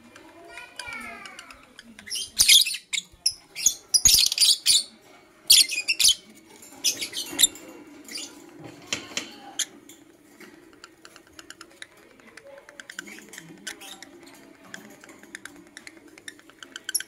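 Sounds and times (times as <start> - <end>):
lovebirds chirping: 0.5 - 8.4, 12.8 - 17.0.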